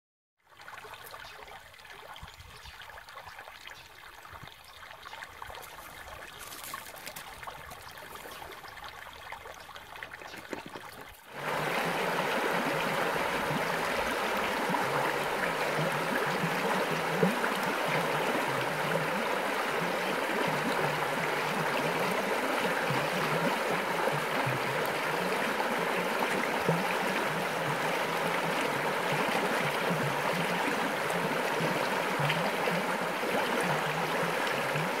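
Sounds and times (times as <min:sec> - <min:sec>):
stream water rushing: 0:10.1 - 0:35.0.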